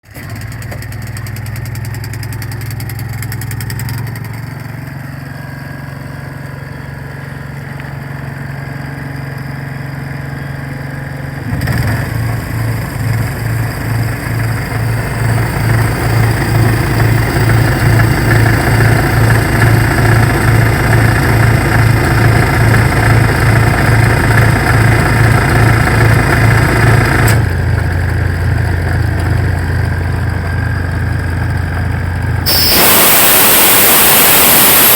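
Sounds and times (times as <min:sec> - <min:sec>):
generator engine running: 0:00.1 - 0:34.9
air compressor pulsing: 0:32.4 - 0:34.9.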